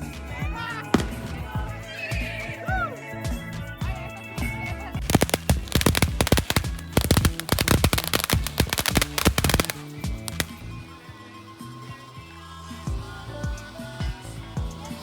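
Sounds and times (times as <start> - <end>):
background music: 0.0 - 15.0
firecrackers banging: 1.0 - 1.9, 5.0 - 10.7.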